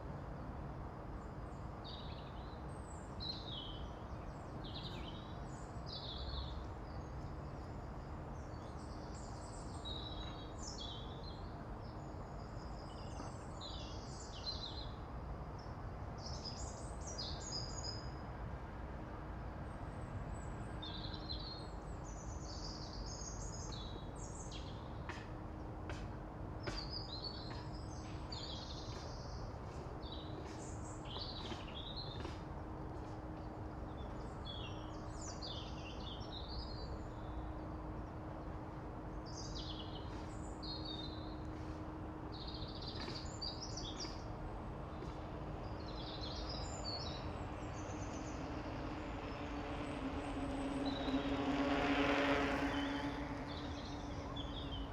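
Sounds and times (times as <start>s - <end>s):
low outdoor rumble: 39.8s - 54.9s.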